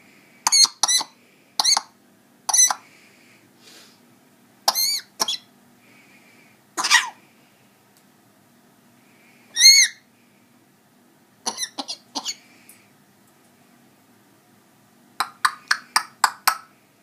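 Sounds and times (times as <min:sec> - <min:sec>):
parrot imitating a cough: 0:00.5 - 0:01.9, 0:04.7 - 0:05.5, 0:06.8 - 0:07.2, 0:11.5 - 0:12.4.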